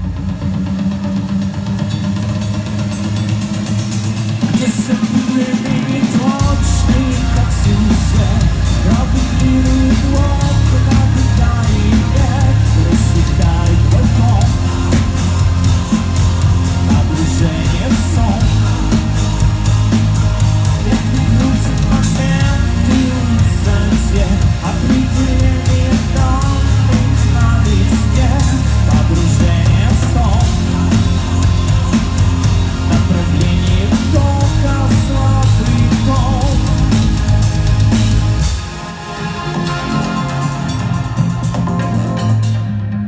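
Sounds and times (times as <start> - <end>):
heavy bass guitar: 0.0 - 43.0
live rock band playing: 2.6 - 43.0
person singing: 4.4 - 37.4.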